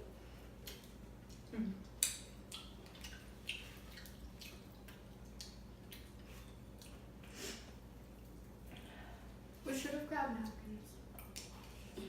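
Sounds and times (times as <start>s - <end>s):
wet chewing and lip-smacking: 0.5s - 7.4s, 10.3s - 12.0s.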